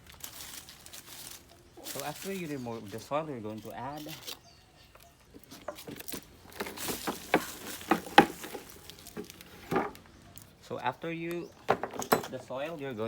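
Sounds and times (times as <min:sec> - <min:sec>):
soil pattering in a pot: 0:00.0 - 0:04.6.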